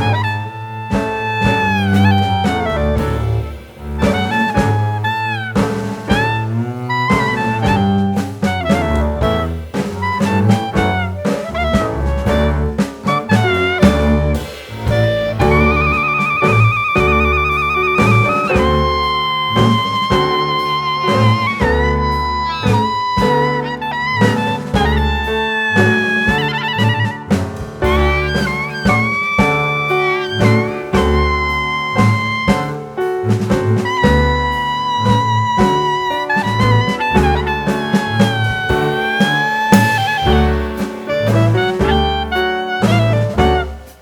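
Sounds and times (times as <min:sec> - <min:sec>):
drum kit: 0:00.0 - 0:44.0
saxophone-like horn: 0:00.0 - 0:44.0
walking double bass: 0:00.0 - 0:44.0.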